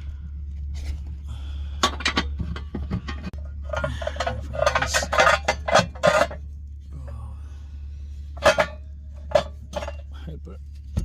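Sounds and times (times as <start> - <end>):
steady low hum: 0.0 - 11.0
metal tools clinking: 1.8 - 6.4, 8.4 - 10.2.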